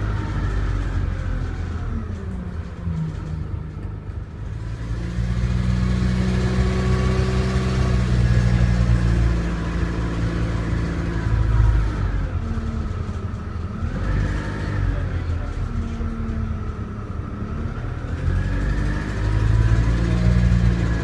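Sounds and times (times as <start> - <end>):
diesel bus engine running: 0.0 - 21.0.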